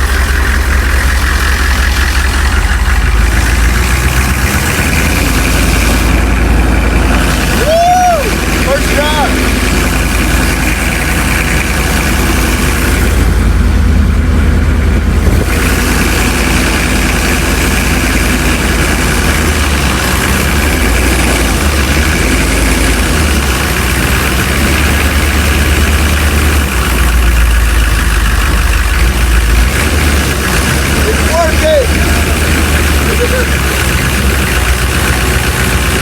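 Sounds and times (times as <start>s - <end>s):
diesel engine rumbling: 0.0s - 36.0s.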